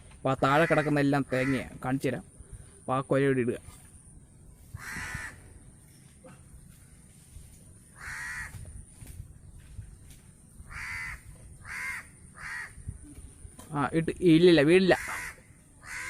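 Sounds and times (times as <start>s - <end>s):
crow cawing: 0.4s - 1.8s, 4.7s - 5.6s, 7.9s - 8.8s, 10.7s - 12.9s, 14.9s - 16.0s.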